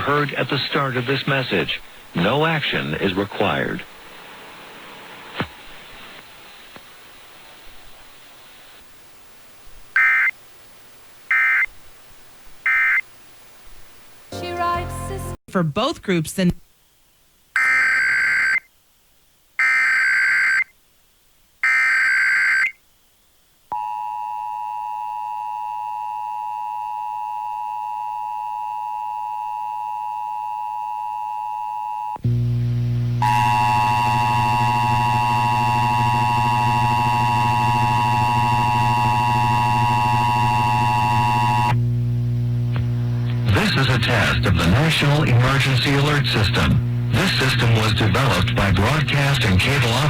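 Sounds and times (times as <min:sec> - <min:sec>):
low hum: 0:32.2 - 0:43.7.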